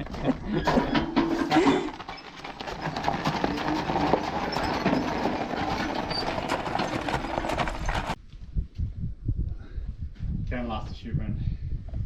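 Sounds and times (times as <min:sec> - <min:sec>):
hoofbeats: 0:00.0 - 0:08.2
horse-drawn carriage rattling: 0:00.0 - 0:08.2.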